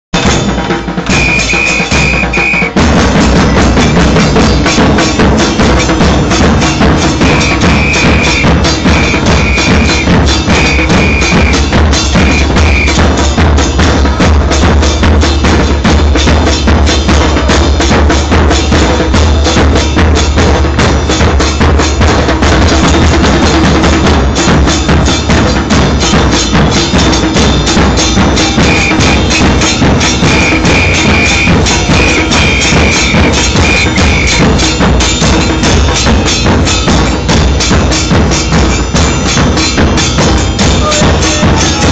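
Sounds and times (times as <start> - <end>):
drum band playing driving beat: 0.1 - 41.9
short high-pitched whistle blasts: 1.1 - 2.8, 7.3 - 13.0, 28.6 - 34.7.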